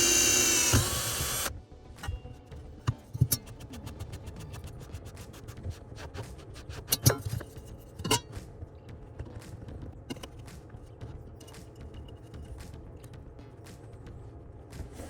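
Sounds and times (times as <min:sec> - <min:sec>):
metal tools clicking and knocking: 0:06.8 - 0:08.4, 0:09.2 - 0:13.2.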